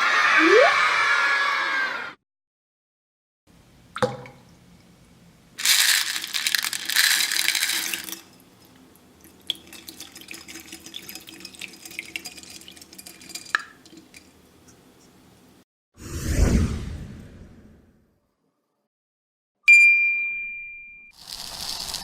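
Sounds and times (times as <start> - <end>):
water pouring out in a rush: 5.6 - 8.2, 21.2 - 22.0
water trickling: 7.7 - 14.4.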